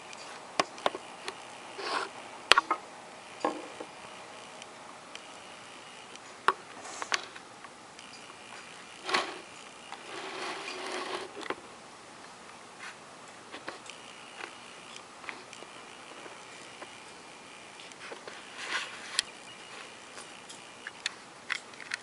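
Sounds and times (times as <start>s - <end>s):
small ticks: 4.4s - 7.4s, 13.5s - 22.0s
sharp plastic clicks: 20.2s - 22.0s.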